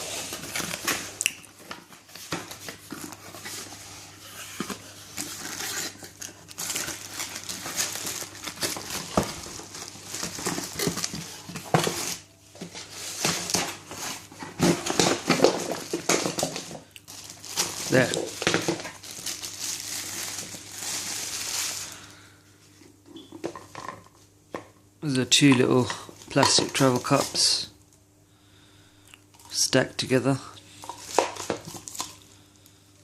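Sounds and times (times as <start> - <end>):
plastic packaging crinkling: 0.0 - 22.4, 25.7 - 27.7, 30.7 - 32.4
plastic cups knocking: 25.5 - 27.4.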